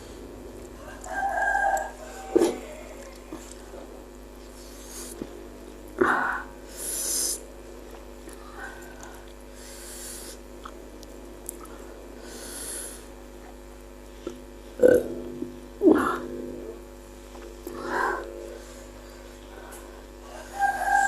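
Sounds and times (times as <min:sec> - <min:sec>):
person breathing: 0:06.0 - 0:07.4, 0:08.4 - 0:10.4, 0:11.6 - 0:13.2, 0:17.7 - 0:20.2
low throat sounds: 0:14.2 - 0:20.2.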